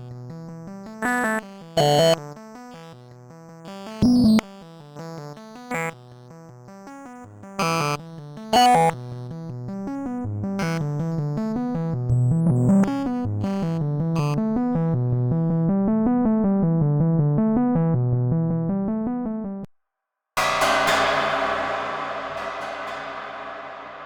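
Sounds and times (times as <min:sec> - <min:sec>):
noisy cymbal-like crash: 0:20.4 - 0:24.0.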